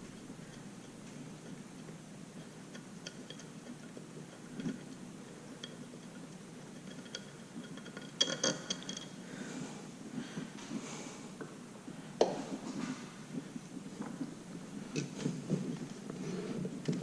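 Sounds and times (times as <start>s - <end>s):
metal clicks and clinks: 6.8s - 9.2s.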